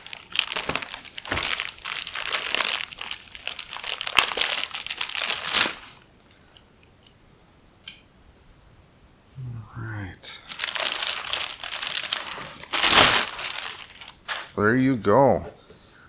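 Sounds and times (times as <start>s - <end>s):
plastic bag crinkling: 0.0s - 6.1s, 10.4s - 14.7s.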